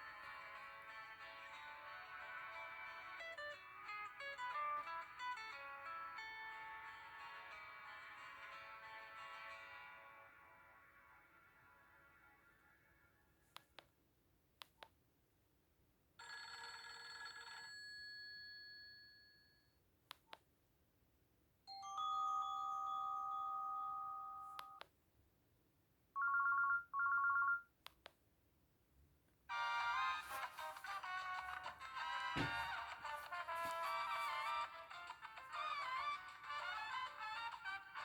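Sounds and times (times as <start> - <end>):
mobile phone alert tones: 21.7 - 24.8, 26.2 - 27.7.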